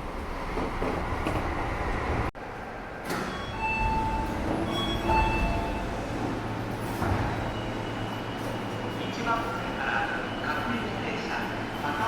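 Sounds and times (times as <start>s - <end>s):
station platform background noise: 0.0s - 12.0s.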